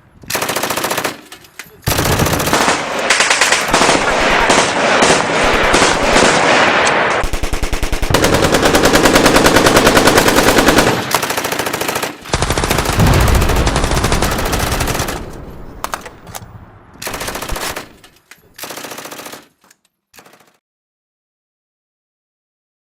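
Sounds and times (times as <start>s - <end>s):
machine-gun fire: 1.9s - 16.0s
scattered gunshots: 1.9s - 16.2s
deep boom: 12.9s - 15.8s.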